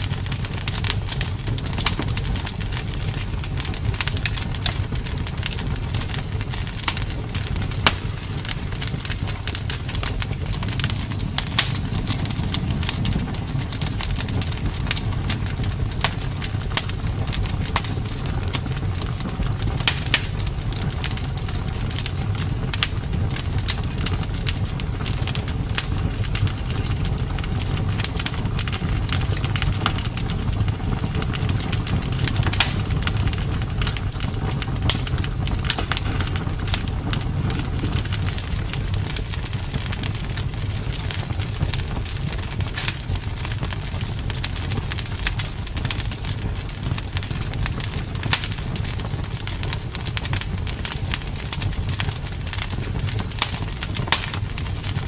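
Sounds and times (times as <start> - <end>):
wood fire crackling: 0.0 - 55.0
sharp pops and snaps: 7.8 - 15.4, 32.0 - 40.0, 40.7 - 43.8, 48.2 - 48.6, 52.0 - 54.6.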